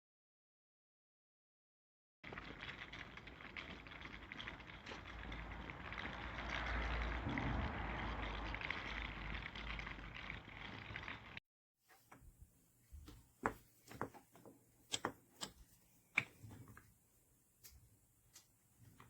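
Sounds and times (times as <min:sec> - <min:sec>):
toy wheels rattling: 0:02.3 - 0:11.4.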